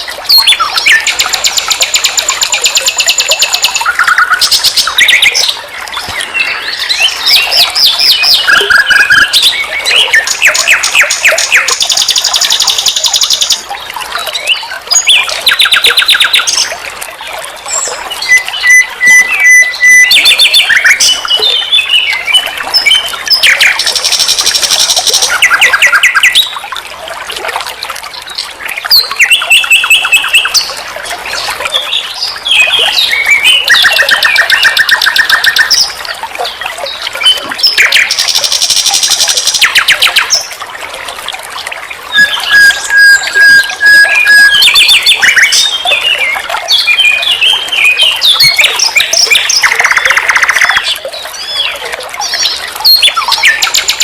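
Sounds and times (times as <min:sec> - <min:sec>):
nightingale singing: 0:42.2 - 0:46.2.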